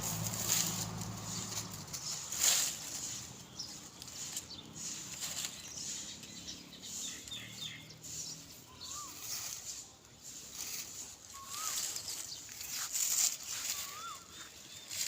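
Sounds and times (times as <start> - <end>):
bird chirps: 3.0 - 9.8, 11.2 - 15.0
warbling bird call: 11.3 - 12.1, 13.5 - 14.5.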